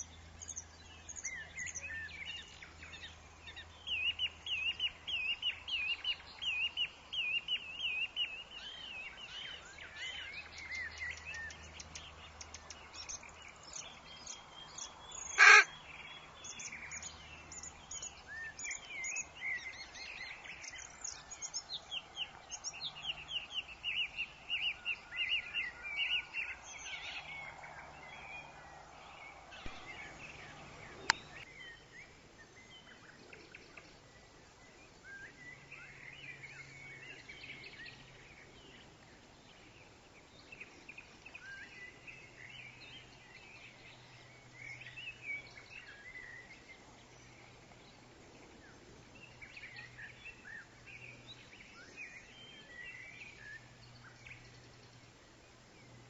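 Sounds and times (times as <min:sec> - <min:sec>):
birds chirping and singing: 0:00.0 - 0:28.5, 0:29.1 - 0:31.8
wind in leaves: 0:00.0 - 0:56.0.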